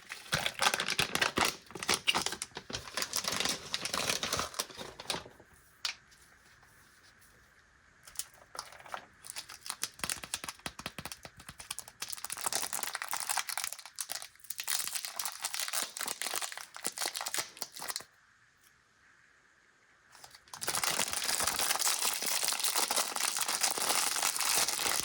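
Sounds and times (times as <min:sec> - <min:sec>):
plastic wrapper crinkling: 0:00.0 - 0:05.5, 0:08.1 - 0:18.1, 0:20.2 - 0:25.0.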